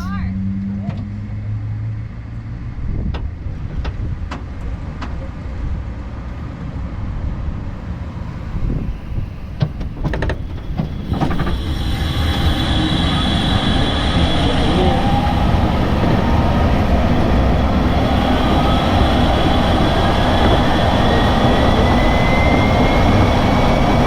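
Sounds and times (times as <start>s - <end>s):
road and drivetrain rumble: 0.0s - 24.0s
steady whine: 7.4s - 24.0s.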